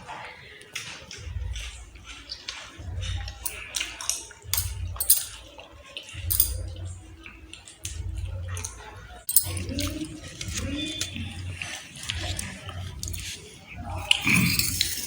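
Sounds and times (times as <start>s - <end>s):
chewing close up: 0.8s - 15.0s
dishes and cutlery clinking: 2.0s - 15.0s.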